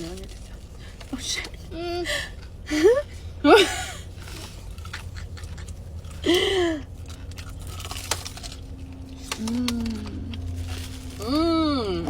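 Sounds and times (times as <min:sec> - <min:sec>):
person chewing crunchy food: 0:04.0 - 0:11.4.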